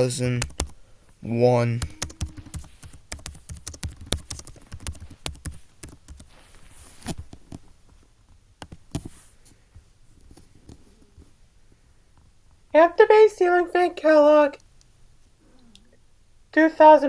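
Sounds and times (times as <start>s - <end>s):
typing on computer keyboard: 0.2s - 0.8s, 1.8s - 7.6s, 8.6s - 9.1s.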